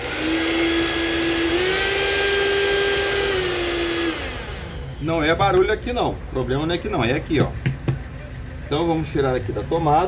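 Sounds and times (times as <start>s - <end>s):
blender motor whining: 0.0s - 5.1s.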